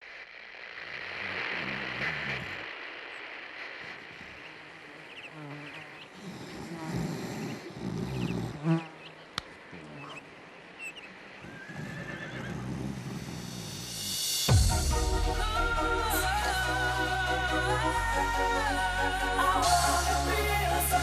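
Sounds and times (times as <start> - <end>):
buzzing insect-like sound: 0.8 - 10.6.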